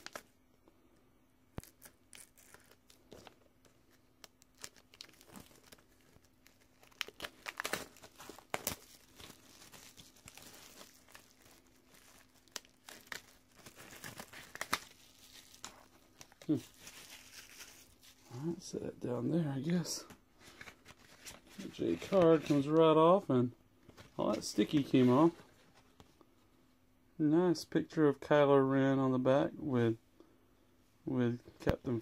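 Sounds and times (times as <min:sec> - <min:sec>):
plastic wrap tearing and crinkling: 0:01.5 - 0:18.3.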